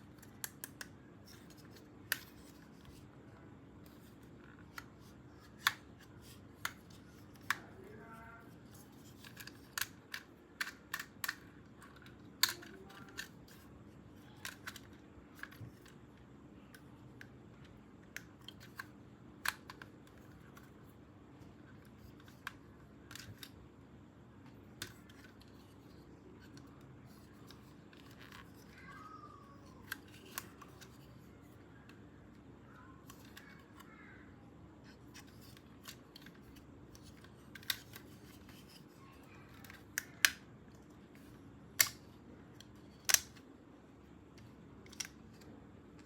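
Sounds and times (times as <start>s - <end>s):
faint steady hum: 0.0s - 46.0s
packaging clicks and snips: 8.7s - 16.0s, 26.4s - 31.1s, 35.0s - 40.5s, 41.7s - 43.5s.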